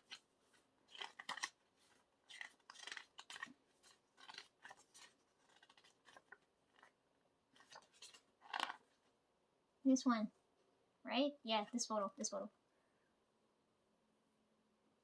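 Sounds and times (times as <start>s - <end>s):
book pages turning: 0.0s - 9.1s.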